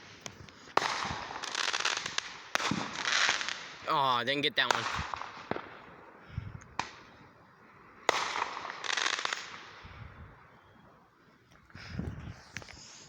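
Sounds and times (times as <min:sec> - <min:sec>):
firework crackling: 0:00.0 - 0:07.1, 0:08.0 - 0:10.5, 0:12.3 - 0:13.0
firework bangs and booms: 0:00.7 - 0:04.0, 0:04.6 - 0:07.1, 0:08.0 - 0:10.5.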